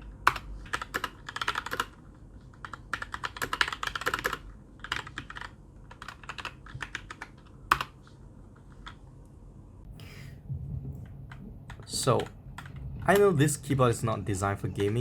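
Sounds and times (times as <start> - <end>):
mechanical keyboard typing: 0.0 - 8.0.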